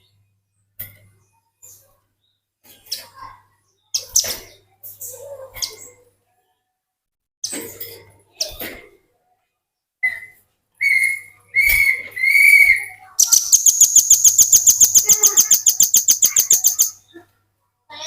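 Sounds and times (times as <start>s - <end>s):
bird whistling and trilling: 10.0s - 17.0s.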